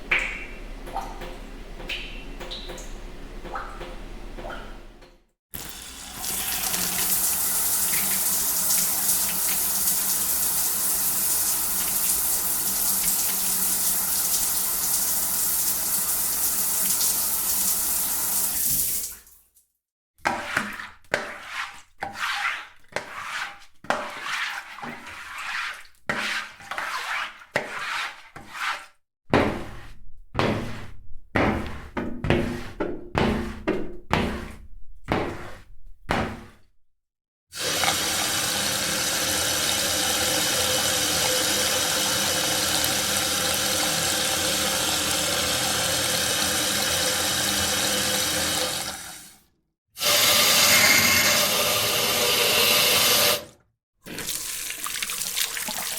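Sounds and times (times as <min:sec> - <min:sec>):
water splashing and dripping: 0:00.0 - 0:19.6, 0:54.0 - 0:55.9.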